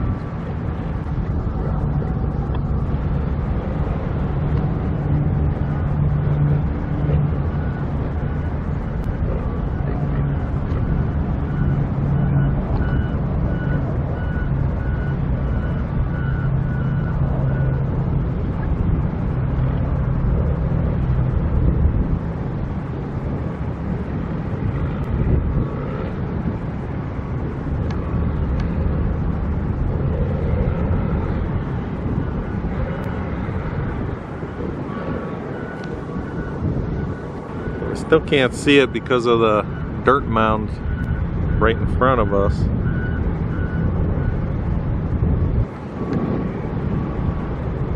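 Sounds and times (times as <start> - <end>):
construction machinery engine rumble: 0.0 - 47.9
reversing alarm beeping: 5.4 - 17.9, 34.8 - 44.5.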